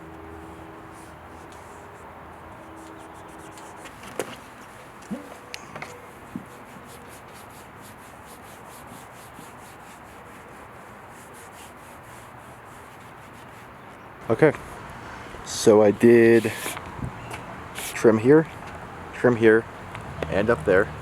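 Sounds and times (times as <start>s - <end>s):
foam block rubbing plastic trim: 0.9s - 5.4s, 6.1s - 13.8s, 16.0s - 16.8s.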